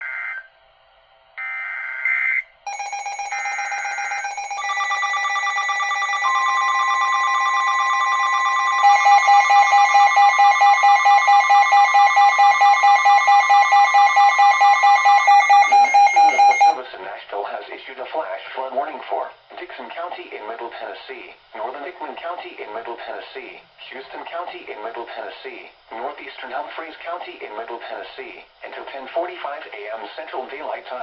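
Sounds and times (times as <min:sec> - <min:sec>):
layered alarm tones: 0:02.7 - 0:16.8.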